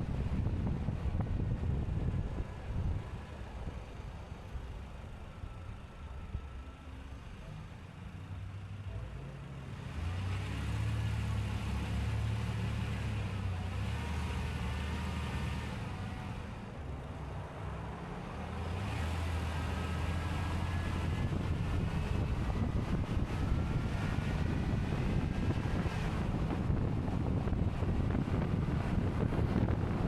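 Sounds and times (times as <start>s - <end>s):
wind buffeting microphone: 0.0s - 4.4s, 19.1s - 30.0s
vehicle engine and road noise: 0.0s - 30.0s.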